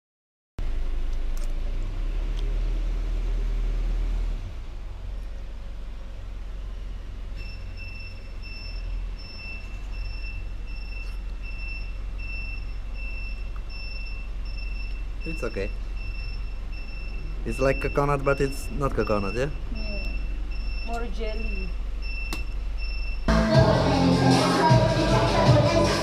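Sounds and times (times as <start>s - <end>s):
vehicle engine rumbling: 0.6s - 26.0s
high electronic beeps: 7.4s - 23.3s.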